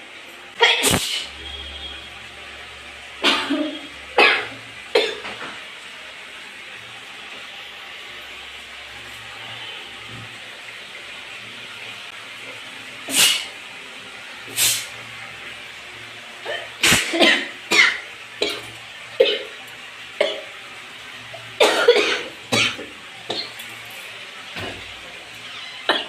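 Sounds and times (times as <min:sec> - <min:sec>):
steady hiss: 0:00.0 - 0:26.0
woman coughing: 0:03.2 - 0:05.3, 0:21.6 - 0:23.4.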